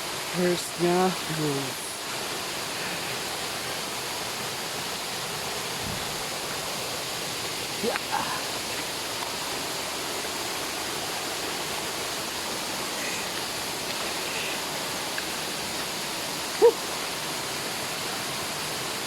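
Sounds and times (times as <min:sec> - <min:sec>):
waterfall rushing: 0:00.0 - 0:19.0
high-pitched cry: 0:16.6 - 0:16.8.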